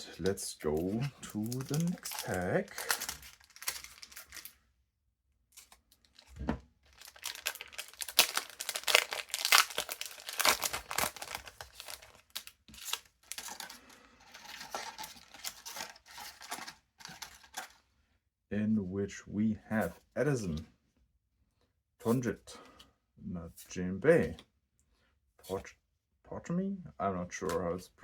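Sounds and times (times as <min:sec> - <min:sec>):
foil wrapper tearing and crinkling: 0:00.7 - 0:04.6, 0:06.9 - 0:17.8.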